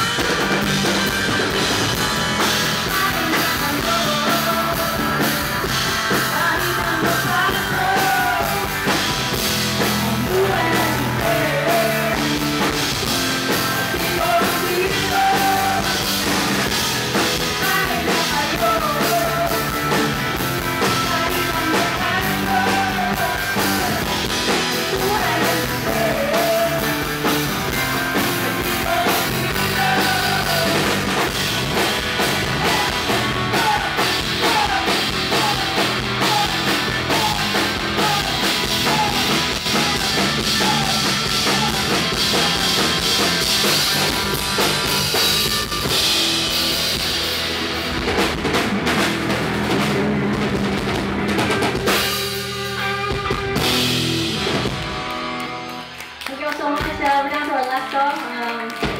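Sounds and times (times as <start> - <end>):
drum kit beat: 0.0 - 55.8
guitar: 0.0 - 58.9
person singing: 2.4 - 9.1, 9.8 - 16.4, 17.4 - 31.4, 32.2 - 44.3.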